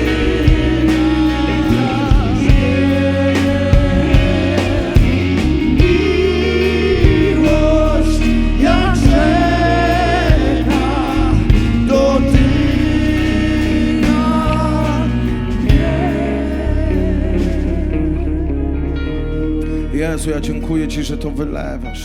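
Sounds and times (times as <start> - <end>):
steady drum beat: 0.0 - 16.6
bass notes: 0.0 - 22.0.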